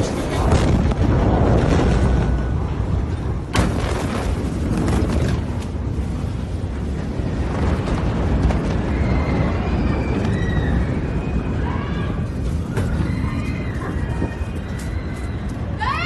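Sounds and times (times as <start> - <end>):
low explosion rumble: 0.0 - 15.8.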